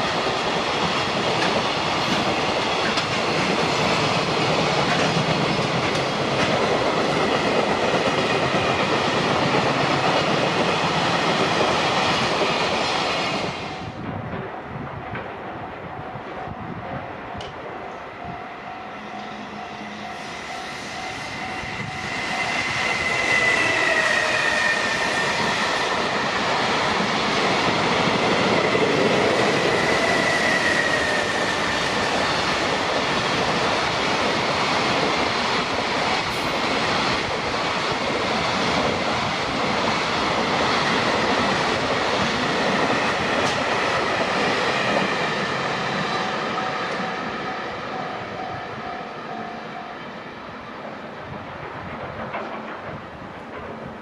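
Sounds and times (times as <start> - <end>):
freight train passing: 0.0 - 54.0
high whine of locomotive: 0.0 - 54.0
crossing warning bell: 14.6 - 23.8, 46.1 - 50.6.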